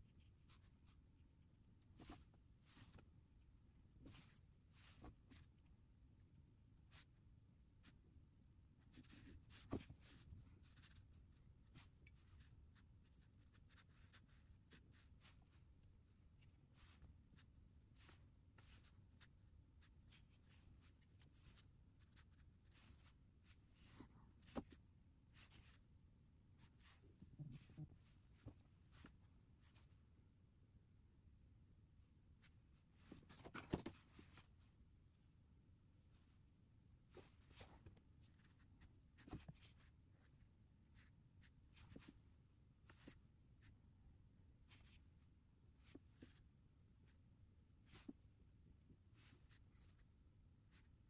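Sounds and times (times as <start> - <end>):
paintbrush strokes on paper: 1.9 - 3.1, 4.0 - 5.5, 8.8 - 15.8, 16.4 - 25.9, 26.5 - 30.0, 36.0 - 42.2, 49.0 - 51.0.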